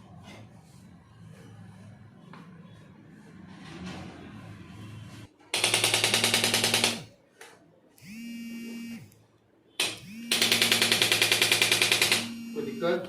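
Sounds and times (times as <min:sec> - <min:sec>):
motor hum: 0:08.0 - 0:09.2, 0:09.8 - 0:10.9, 0:11.8 - 0:13.0.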